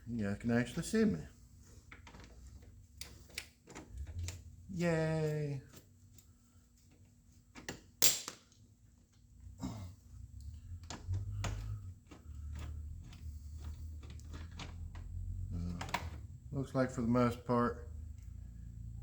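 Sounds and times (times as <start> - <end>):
low rumble of rubbing: 10.6 - 15.6.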